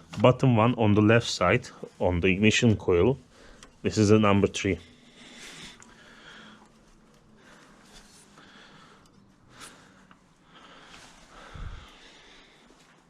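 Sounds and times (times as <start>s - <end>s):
faint breathing: 3.2s - 3.8s, 4.8s - 13.0s.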